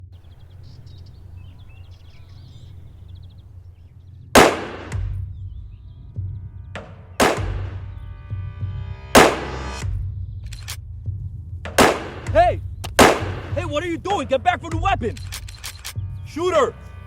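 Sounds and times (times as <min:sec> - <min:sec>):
gunshots: 0:04.4 - 0:05.1, 0:07.2 - 0:07.8, 0:09.2 - 0:09.8, 0:11.7 - 0:13.6.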